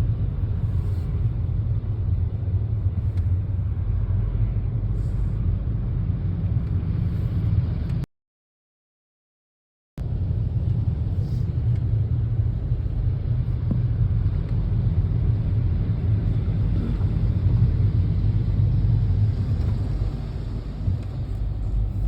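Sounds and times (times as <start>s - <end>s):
car road and engine rumble: 0.0s - 8.1s, 10.0s - 22.0s.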